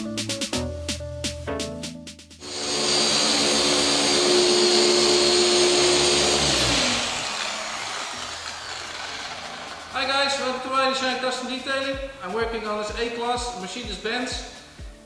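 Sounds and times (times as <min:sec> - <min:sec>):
electric blower motor whining: 0:02.4 - 0:10.4.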